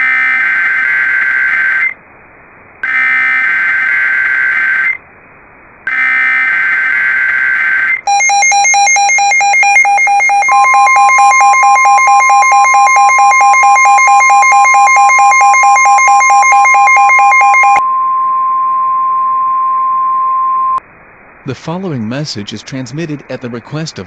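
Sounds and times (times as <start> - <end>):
pulsing electronic alarm: 2.8 - 5.0, 5.9 - 20.8
steady warning tone: 5.9 - 20.8
shrill data warble: 6.7 - 19.6.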